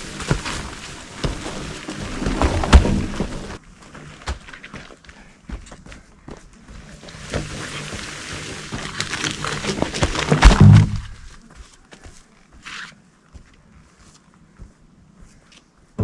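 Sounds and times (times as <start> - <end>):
branches rushing through air: 0.0 - 3.6
tree cracking and falling: 0.0 - 3.6, 7.0 - 11.4
heavy thud on ground: 10.3 - 11.3.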